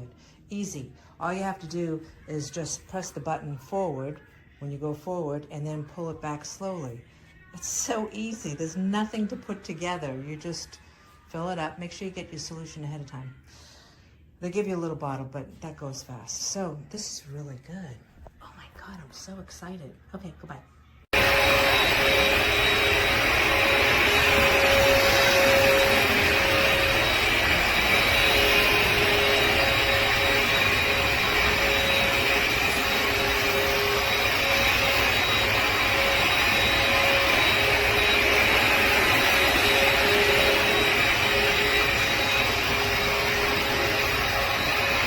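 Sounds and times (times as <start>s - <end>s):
floor cleaner suction motor running: 21.1s - 45.0s.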